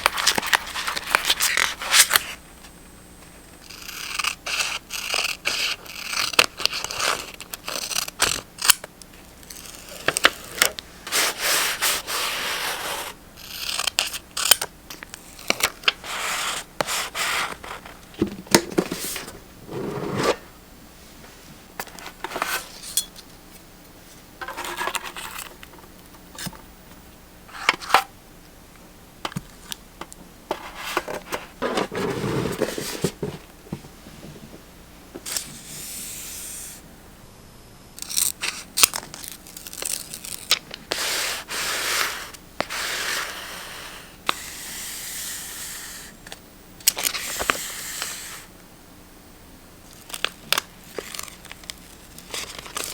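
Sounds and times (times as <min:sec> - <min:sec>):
paper rustling: 0:15.5 - 0:20.4, 0:30.5 - 0:34.6, 0:50.0 - 0:52.9.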